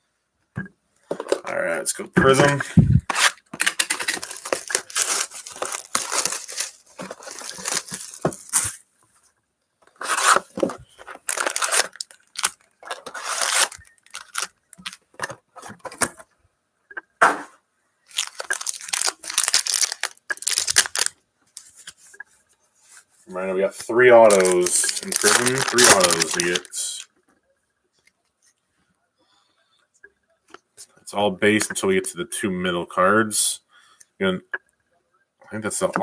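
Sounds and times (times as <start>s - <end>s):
packaging tearing and crinkling: 3.1s - 8.8s, 10.0s - 15.0s, 18.1s - 21.8s, 24.2s - 27.0s.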